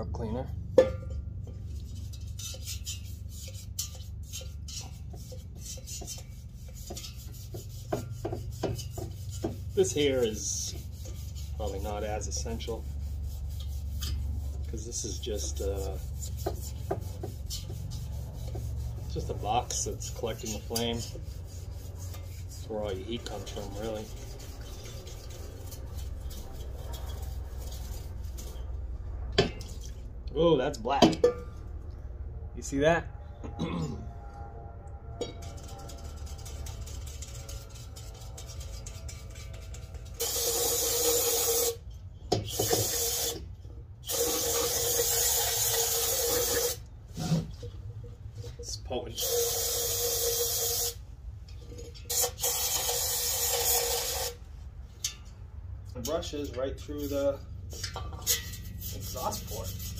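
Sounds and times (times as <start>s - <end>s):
stiff brush scrubbing metal: 0.9s - 32.0s, 34.6s - 55.3s, 55.9s - 59.9s.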